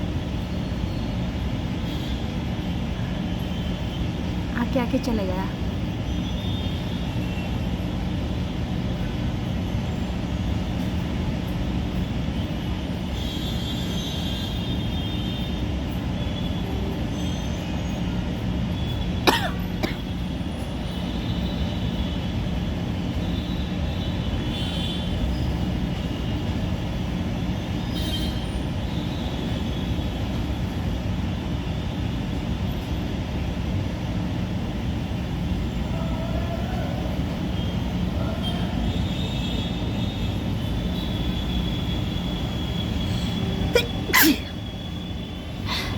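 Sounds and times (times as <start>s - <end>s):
background traffic noise: 0.0s - 45.9s
woman sneezing: 19.3s - 20.0s, 43.7s - 44.6s.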